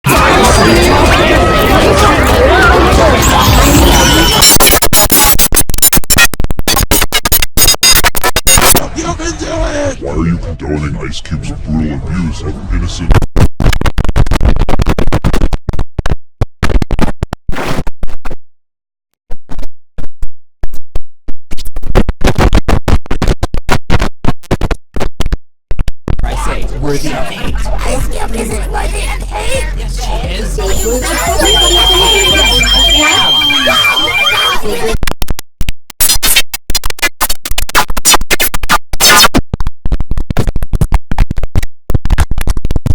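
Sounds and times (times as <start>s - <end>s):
digitally stuttered chopped audio: 0.1s - 8.9s, 21.5s - 26.3s, 30.0s - 42.9s
electronic record scratch effect: 0.1s - 8.9s, 12.7s - 18.4s, 21.5s - 35.3s, 35.9s - 42.9s.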